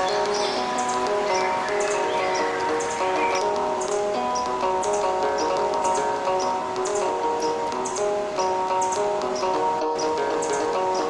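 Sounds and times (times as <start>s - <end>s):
soft instrumental music: 0.0s - 11.0s.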